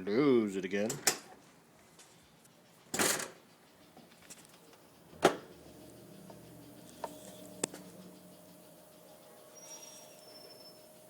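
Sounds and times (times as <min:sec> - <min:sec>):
clunk: 0:02.9 - 0:03.4, 0:05.2 - 0:05.5
pump humming: 0:04.9 - 0:11.0.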